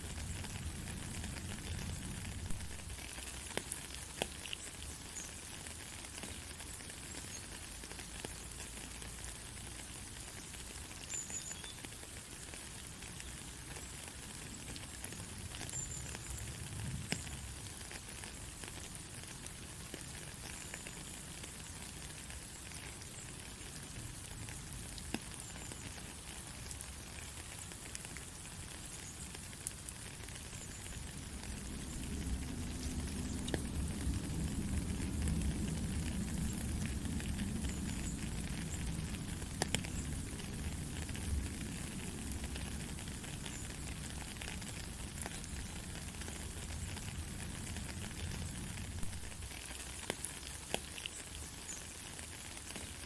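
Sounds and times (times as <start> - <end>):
steady rainfall: 0.0 - 53.0
sharp raindrop hits: 30.2 - 51.8.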